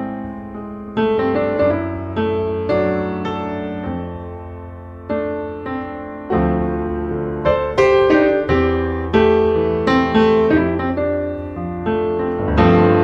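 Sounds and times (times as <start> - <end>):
slow gentle piano music: 0.0 - 13.0.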